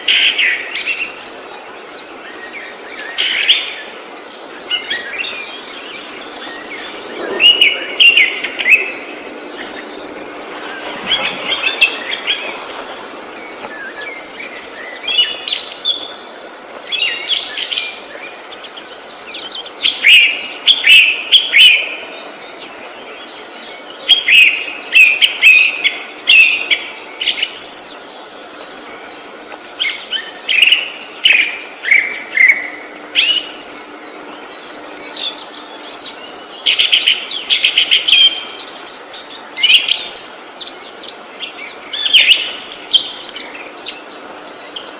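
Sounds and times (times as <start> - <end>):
steady background hiss: 0.0 - 44.9
songbird whistling and trilling: 11.1 - 22.3, 23.2 - 28.2, 29.6 - 44.9.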